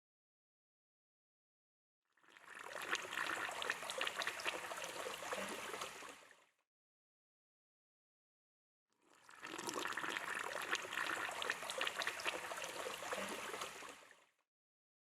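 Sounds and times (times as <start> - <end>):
water splashing and trickling: 2.2 - 6.6, 9.0 - 14.4.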